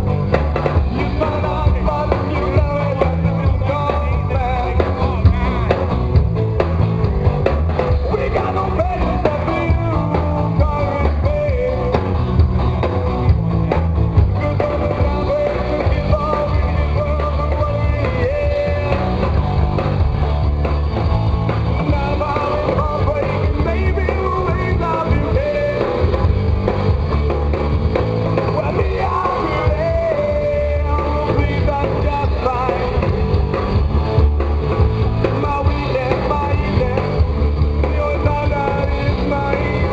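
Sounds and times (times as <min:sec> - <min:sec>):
live rock band playing: 0:00.0 - 0:39.9
person singing: 0:00.8 - 0:06.0, 0:08.0 - 0:12.2, 0:14.3 - 0:19.4, 0:21.8 - 0:26.2, 0:28.5 - 0:33.2, 0:35.2 - 0:39.9.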